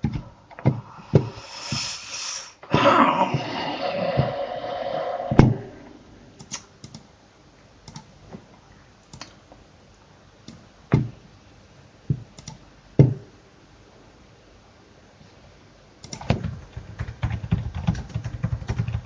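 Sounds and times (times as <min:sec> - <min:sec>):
keyboard and mouse clicks: 0:00.0 - 0:01.9, 0:06.4 - 0:07.1, 0:07.8 - 0:08.4, 0:09.0 - 0:09.4, 0:12.1 - 0:12.6, 0:16.0 - 0:19.0
loud hissing rush: 0:00.7 - 0:06.4.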